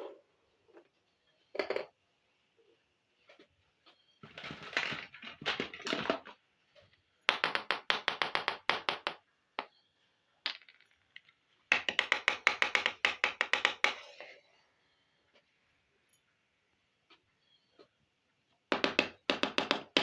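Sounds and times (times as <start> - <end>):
plastic toys rustling: 4.2 - 6.4.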